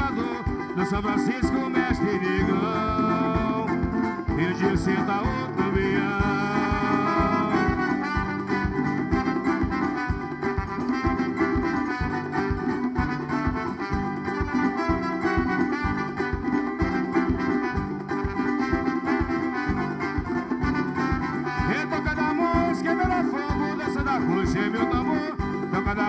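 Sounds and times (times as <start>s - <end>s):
steady drum beat: 0.0s - 26.0s
horn-like melody: 5.1s - 24.8s.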